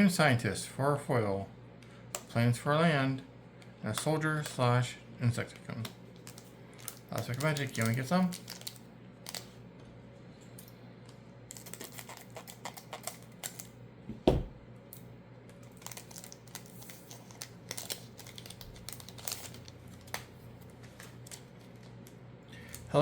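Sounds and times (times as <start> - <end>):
card pack rustling and clicking: 5.5 - 9.5, 11.5 - 13.7, 15.6 - 22.8
loud thump: 14.1 - 14.6.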